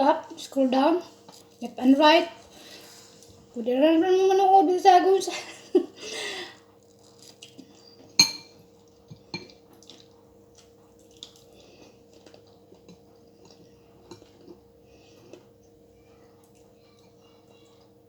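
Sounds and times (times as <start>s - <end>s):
faint steady hum: 0.0s - 18.0s
cutlery clinking against a dish: 8.0s - 9.6s.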